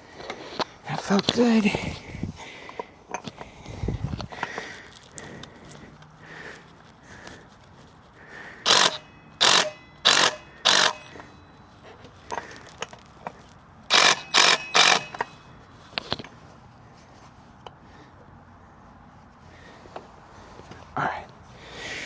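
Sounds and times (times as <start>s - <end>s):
impact wrench bursts: 8.3s - 16.2s.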